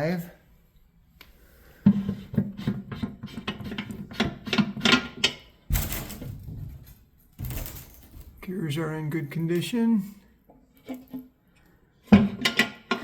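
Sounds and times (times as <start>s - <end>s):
metal parts clicking and rattling: 4.8s - 8.4s
loud metal clunk: 5.7s - 8.4s.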